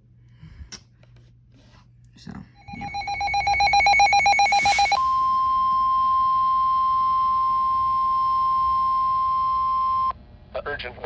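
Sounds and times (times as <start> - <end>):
rapid electronic beeping: 2.6 - 5.6
steady high warning tone: 2.6 - 10.1.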